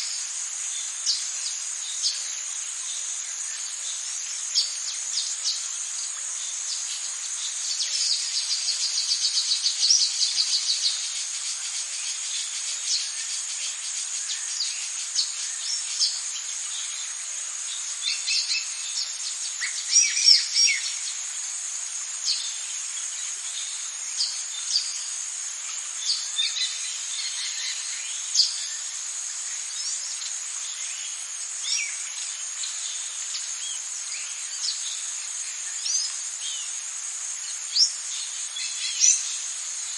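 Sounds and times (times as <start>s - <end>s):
high-pitched insect drone: 0.0s - 39.9s
bird calls and chirps: 4.6s - 21.2s, 37.5s - 39.4s.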